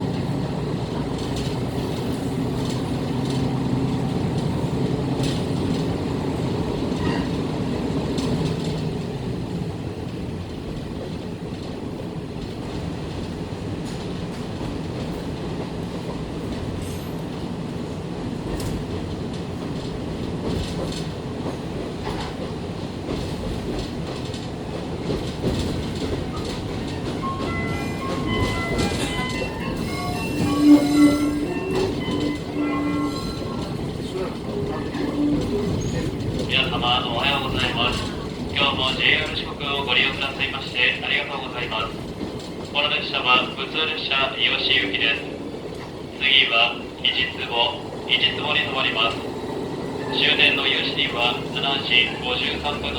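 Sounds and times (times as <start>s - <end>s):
diesel railcar engine: 0.0s - 52.9s
train wheel clicks on track: 0.1s - 52.9s.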